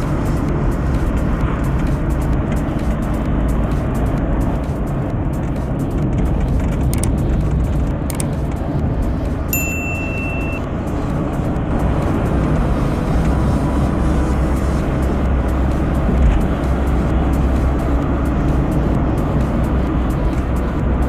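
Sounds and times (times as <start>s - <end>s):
car engine and road noise: 0.0s - 21.0s
short high beep: 9.5s - 10.7s.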